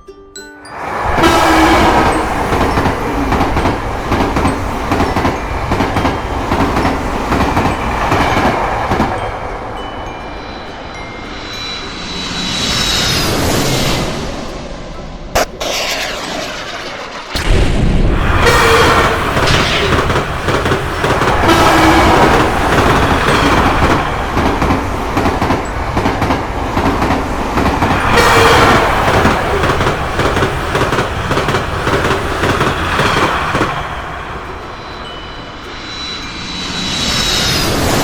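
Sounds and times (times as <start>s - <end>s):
train horn notes: 0.8s - 3.6s, 18.3s - 19.5s, 21.3s - 24.0s, 27.9s - 29.8s
train wheels clattering over rails: 0.9s - 9.6s, 18.2s - 38.0s.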